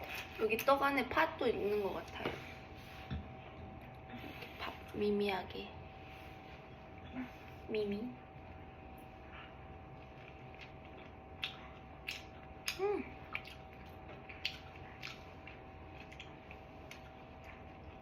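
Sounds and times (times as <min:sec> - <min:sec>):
wet mouth chewing clicks: 0:10.5 - 0:17.6.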